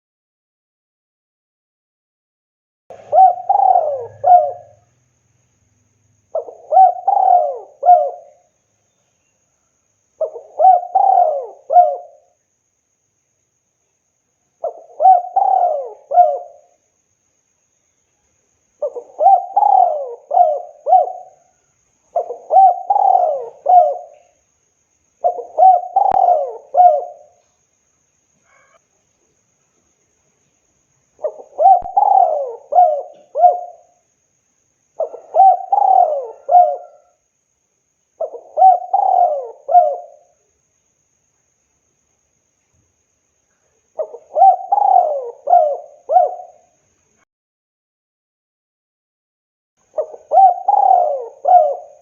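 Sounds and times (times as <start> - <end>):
dove cooing: 2.9 - 4.9, 6.3 - 8.5, 10.2 - 12.4, 14.6 - 16.8, 18.8 - 24.4, 25.2 - 27.4, 31.2 - 34.0, 35.0 - 37.2, 38.2 - 40.4, 44.0 - 46.7, 50.0 - 52.0.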